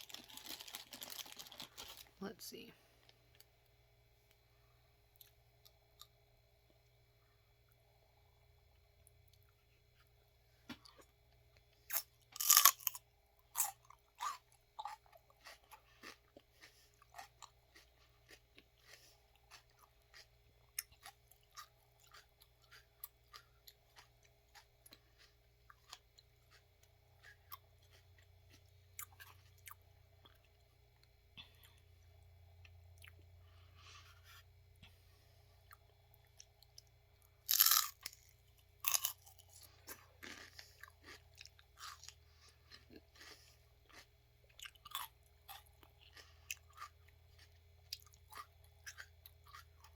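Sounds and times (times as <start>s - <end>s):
biting into celery crunches: 0.0s - 2.1s, 11.9s - 29.8s, 37.4s - 49.9s
close-up chewing: 10.8s - 35.0s, 35.6s - 49.9s.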